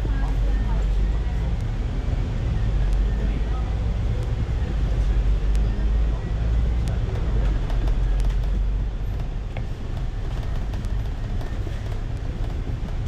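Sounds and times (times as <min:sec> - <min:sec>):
bus engine and road rumble: 0:00.0 - 0:13.0
faint rattles and clicks: 0:06.8 - 0:13.0.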